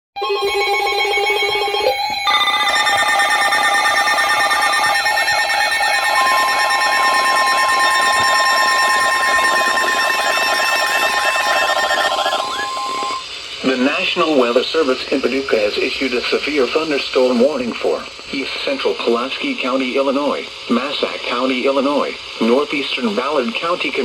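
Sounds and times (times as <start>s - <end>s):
steady alert tone: 0.2s - 13.2s
warbling electronic alarm beeps: 0.2s - 13.3s.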